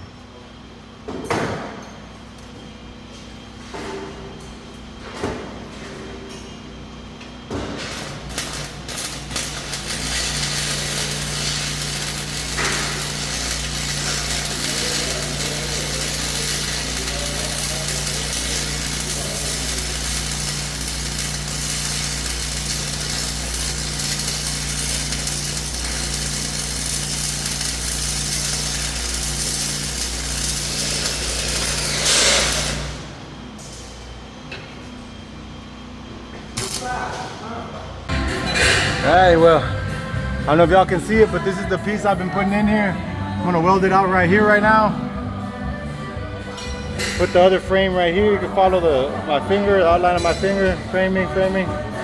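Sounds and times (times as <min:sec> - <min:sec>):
arc welding hiss: 0:07.8 - 0:33.2, 0:36.6 - 0:37.2.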